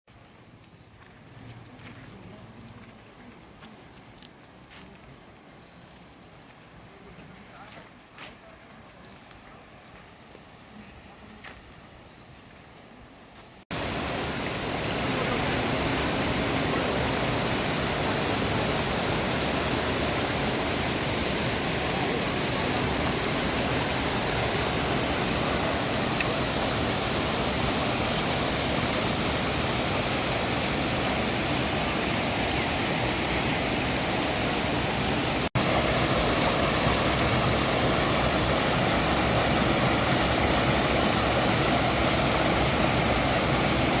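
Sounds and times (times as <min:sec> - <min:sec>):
stream water rushing: 0:13.7 - 0:44.0.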